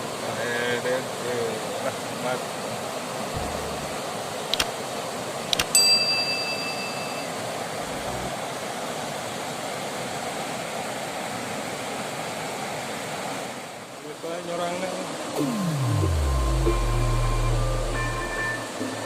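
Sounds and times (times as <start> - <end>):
short clicks: 5.5 - 5.7
bell-like ding: 5.8 - 7.4.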